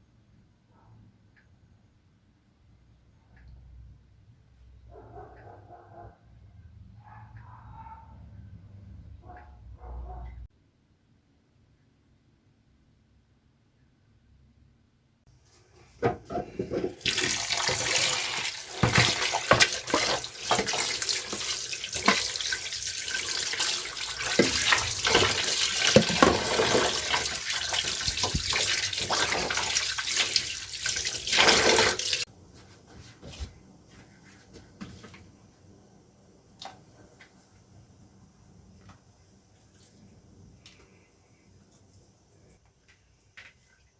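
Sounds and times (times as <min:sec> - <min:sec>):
objects knocking and clattering: 0:16.0 - 0:18.1, 0:18.7 - 0:20.9, 0:24.3 - 0:29.5
tap running into sink: 0:16.0 - 0:22.6, 0:23.6 - 0:30.3.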